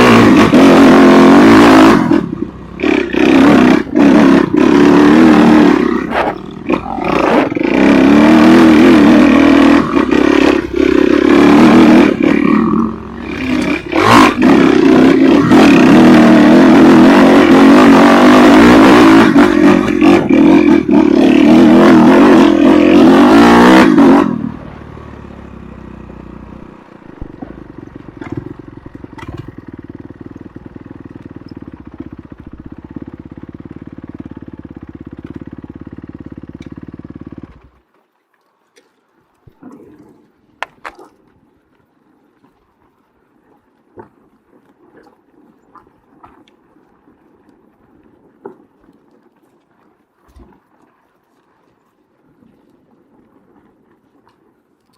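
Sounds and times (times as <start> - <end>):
motorcycle engine revving and idling: 0.0 - 37.8.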